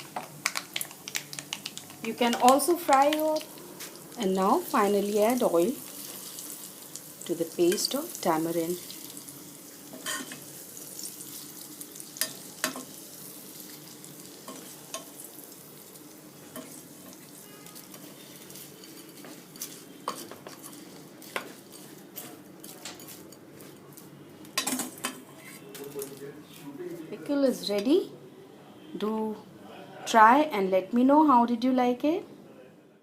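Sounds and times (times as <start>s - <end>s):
hot oil sizzling: 0.0s - 23.0s.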